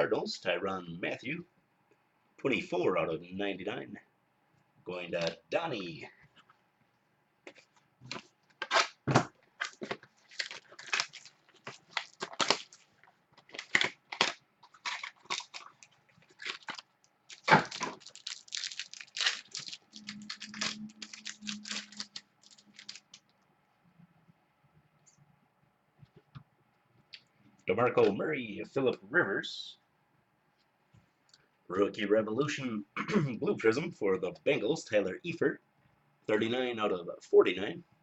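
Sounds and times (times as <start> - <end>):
card wrappers torn and crinkled: 8.1 - 23.3.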